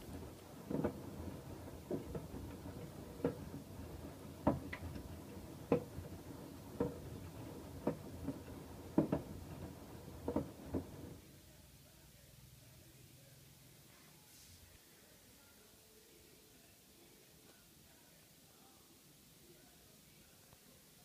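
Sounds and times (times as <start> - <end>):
laundry knocking in drum: 0.0 - 11.2
washing machine low rumble: 0.0 - 13.0.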